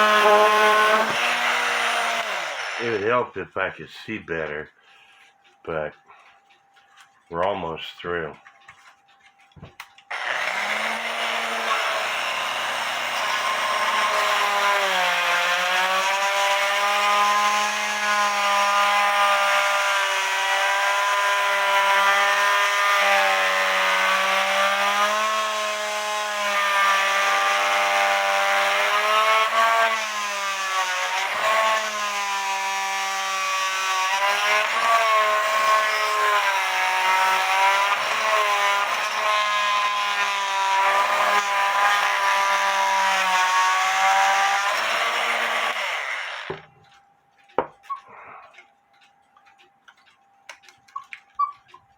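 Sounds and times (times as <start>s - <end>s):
oscillating multi-tool cutting wood: 0.0s - 3.3s, 8.8s - 51.9s.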